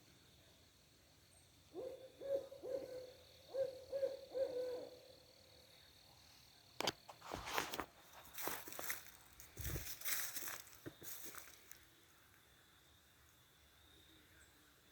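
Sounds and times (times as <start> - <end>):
owl hooting: 1.7 - 5.3.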